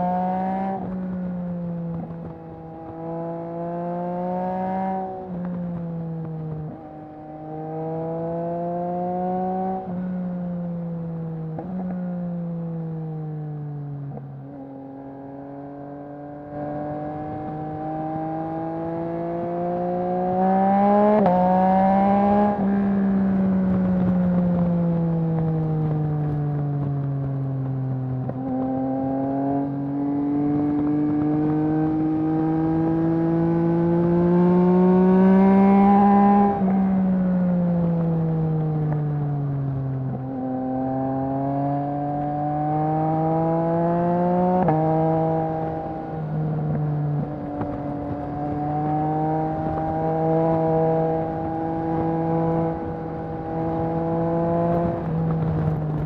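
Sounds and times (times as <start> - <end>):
motorcycle engine revving: 14.0 - 56.0
rough wind noise: 43.4 - 56.0.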